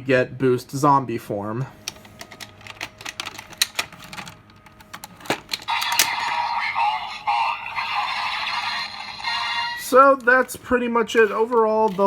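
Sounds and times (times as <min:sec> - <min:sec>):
plastic toy clicks and snaps: 0:05.5 - 0:06.3
toy belt electronic sound effect: 0:05.7 - 0:10.0.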